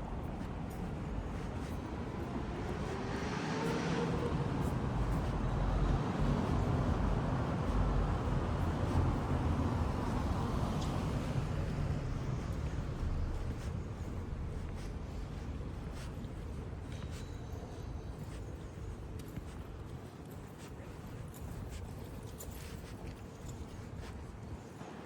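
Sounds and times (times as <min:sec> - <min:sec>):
vehicle passing on street: 0:00.1 - 0:16.9.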